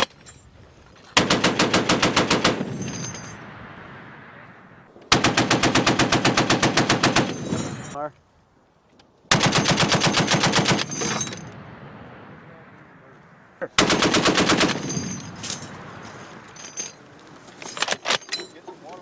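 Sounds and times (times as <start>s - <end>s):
heavy machine gun bursts: 13.8s - 15.2s.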